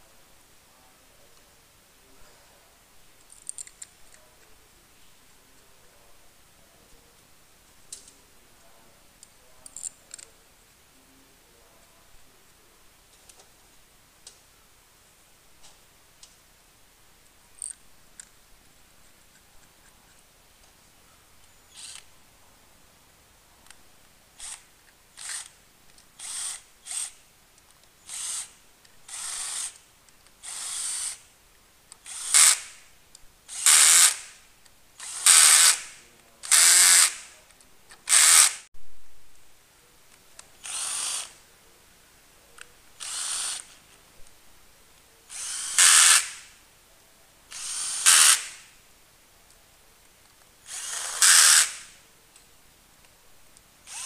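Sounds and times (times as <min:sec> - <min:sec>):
power tool short bursts: 0:45.3 - 0:46.5, 0:47.6 - 0:48.6, 0:50.7 - 0:51.9.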